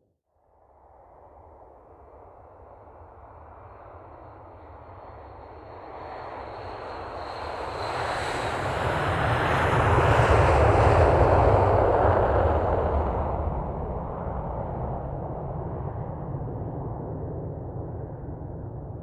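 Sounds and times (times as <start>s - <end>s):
high jet engine whine: 3.7s - 19.0s.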